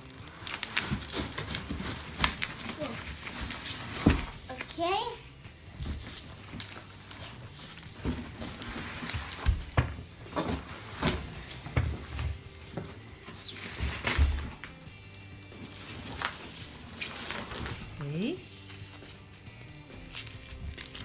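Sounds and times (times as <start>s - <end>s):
packaging rustling: 0.0s - 21.0s
heavy thumps: 7.8s - 14.9s.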